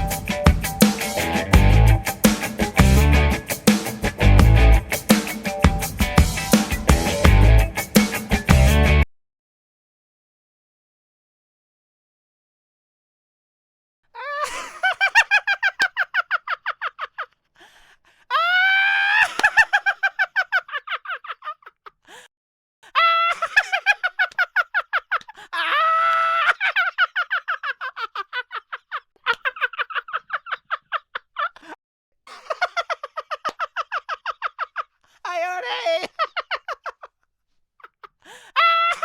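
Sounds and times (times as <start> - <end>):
man laughing high-pitched: 14.2 - 17.4, 18.3 - 22.2, 22.9 - 37.2, 37.8 - 39.0.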